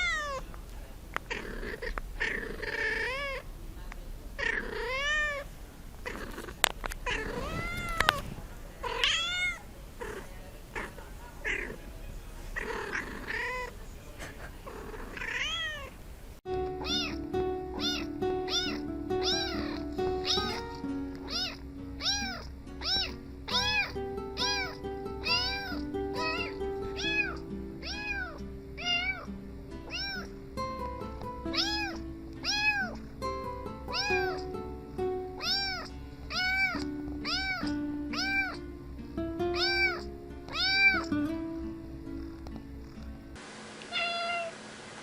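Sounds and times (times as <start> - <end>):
cat meowing: 0.0 - 0.4, 1.3 - 3.4, 4.4 - 11.8, 12.6 - 13.8, 14.7 - 16.0, 16.8 - 17.2, 17.8 - 30.3, 31.5 - 33.0, 33.9 - 34.5, 35.4 - 38.6, 39.5 - 41.1, 43.9 - 44.5
music with held notes: 16.5 - 43.4.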